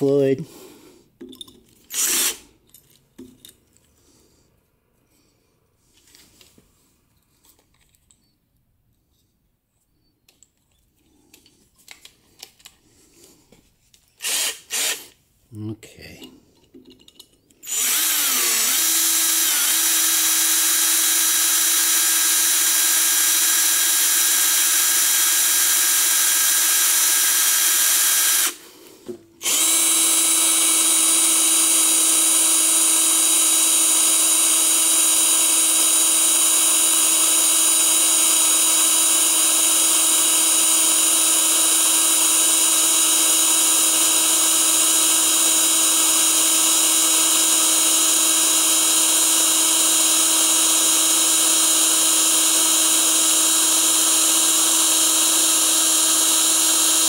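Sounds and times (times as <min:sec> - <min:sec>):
hand drill whining: 0:01.9 - 0:02.5, 0:14.2 - 0:15.2, 0:17.6 - 0:28.7, 0:29.4 - 0:57.0.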